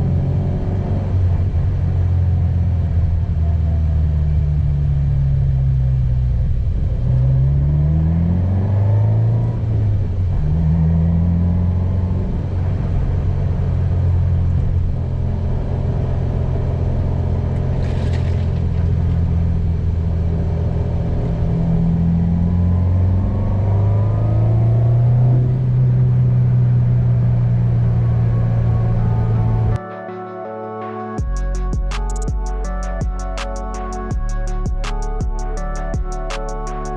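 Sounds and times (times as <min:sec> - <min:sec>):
car engine revving while driving: 0:06.9 - 0:18.4, 0:20.3 - 0:29.6.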